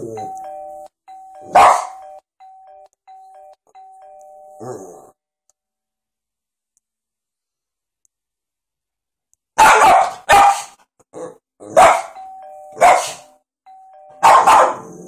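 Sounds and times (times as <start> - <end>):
two-note doorbell chime: 0.0 - 4.8, 12.1 - 14.4
dog barking loudly: 1.5 - 2.0, 9.6 - 10.8, 11.7 - 12.2, 12.8 - 13.3, 14.2 - 15.0.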